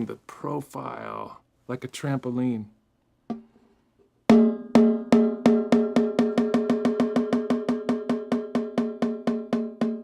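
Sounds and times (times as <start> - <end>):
snare drum pitch-bending strokes: 4.3 - 10.0.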